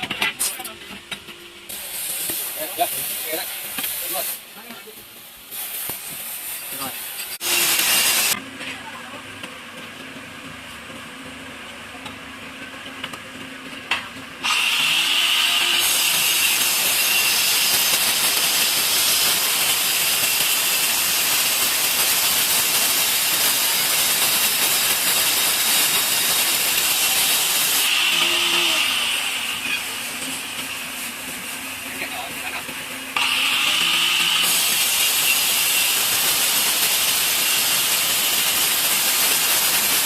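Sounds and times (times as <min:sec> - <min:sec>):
tile saw grinding: 0:06.6 - 0:08.4, 0:14.4 - 0:30.5, 0:33.2 - 0:40.0.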